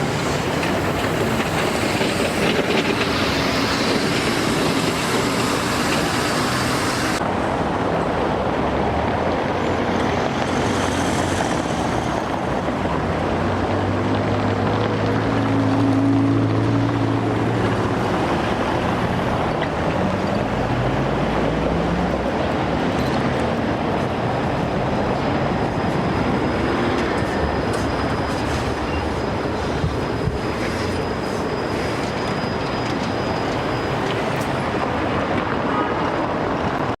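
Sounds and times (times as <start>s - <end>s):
high wheel squeal: 0.0s - 7.2s, 25.1s - 35.0s
tram motor whine: 0.0s - 7.2s, 23.7s - 35.1s
tram rolling noise: 0.0s - 37.0s.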